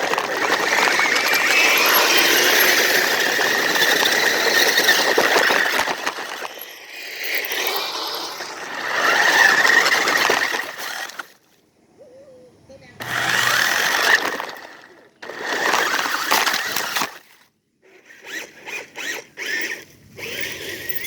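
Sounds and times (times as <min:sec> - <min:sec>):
electric motor whining under load: 0:00.0 - 0:11.2, 0:12.9 - 0:17.2, 0:17.9 - 0:21.0.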